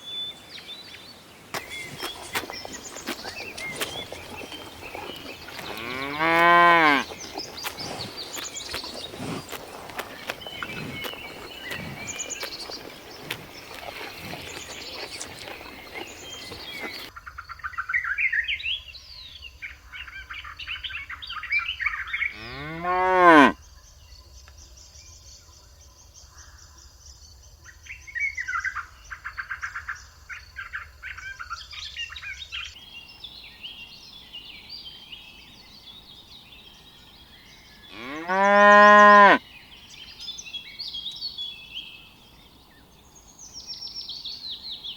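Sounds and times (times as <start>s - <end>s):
small birds chirping: 0.0s - 17.1s, 32.7s - 44.9s
cows mooing: 1.8s - 17.1s, 22.4s - 23.6s, 37.9s - 39.4s.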